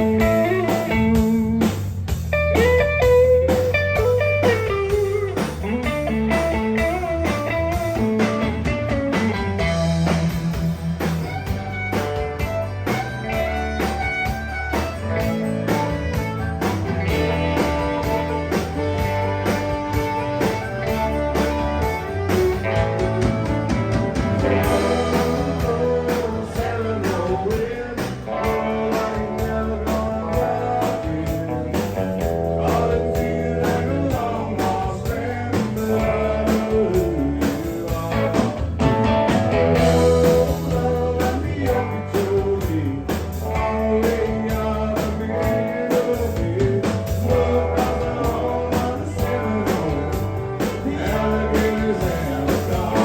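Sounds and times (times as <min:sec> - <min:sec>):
country band playing: 0:00.0 - 0:53.0
person singing: 0:24.6 - 0:38.8, 0:39.8 - 0:53.0.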